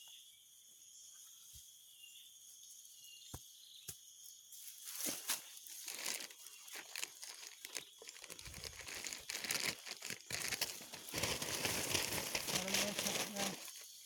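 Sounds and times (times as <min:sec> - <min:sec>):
rustling and crackling: 0:05.0 - 0:13.8.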